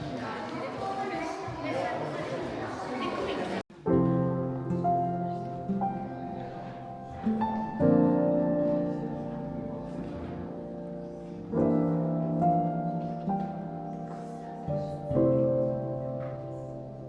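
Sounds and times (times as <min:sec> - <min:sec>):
sustained piano chords: 0:03.7 - 0:17.0.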